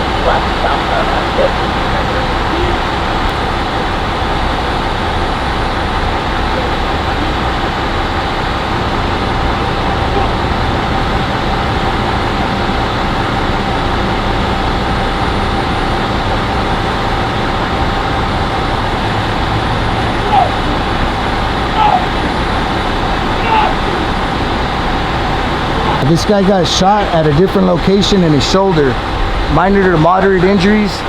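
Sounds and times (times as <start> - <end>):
faint engine whine: 0.0 - 31.0
vehicle engine idling: 0.0 - 31.0.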